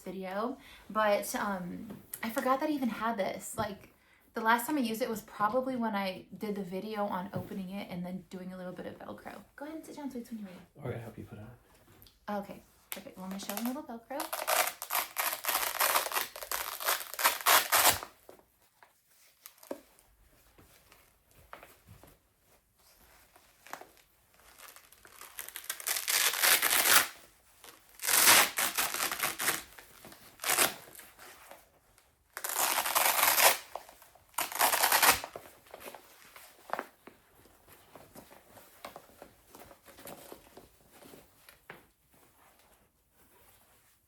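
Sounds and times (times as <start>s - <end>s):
velcro straps ripping: 12.9s - 18.2s, 19.4s - 20.0s, 23.4s - 31.7s, 32.3s - 36.9s.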